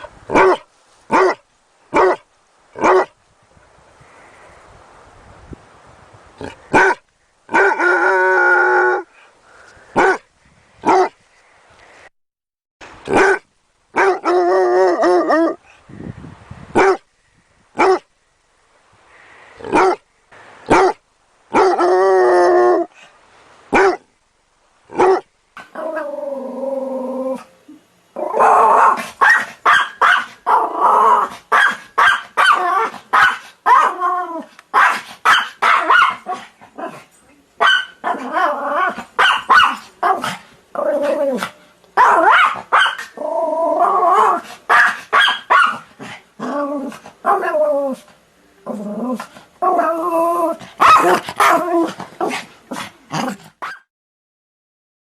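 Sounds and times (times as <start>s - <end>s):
dogs barking: 0.3s - 2.2s, 6.7s - 7.8s, 13.1s - 13.4s, 16.8s - 17.0s, 23.7s - 24.0s, 28.8s - 30.7s, 31.5s - 34.0s, 34.8s - 36.4s, 39.2s - 40.3s, 42.0s - 43.1s, 44.2s - 45.9s, 50.8s - 51.7s.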